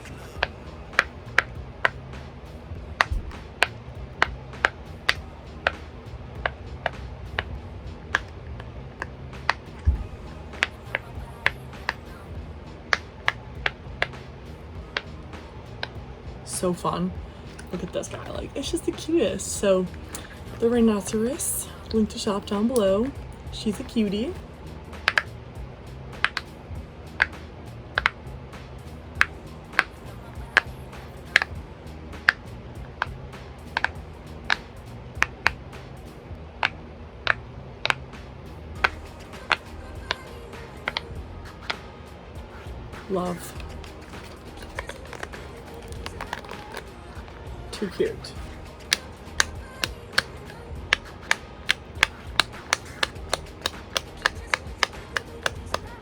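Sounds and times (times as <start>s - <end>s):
fidget toy bubbles popping: 50.9s - 55.9s.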